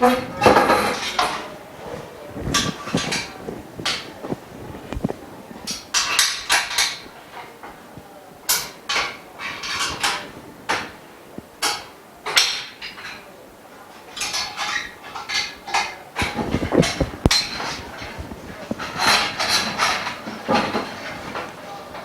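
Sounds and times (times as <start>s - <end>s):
metal bars knocking together: 5.7s - 7.5s.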